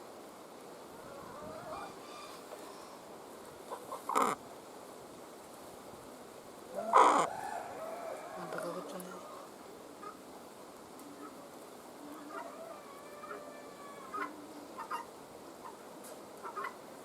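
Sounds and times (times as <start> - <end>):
faint hen calls: 1.0 - 3.0, 6.7 - 10.2, 11.1 - 15.8
hen clucking harshly: 6.7 - 8.9.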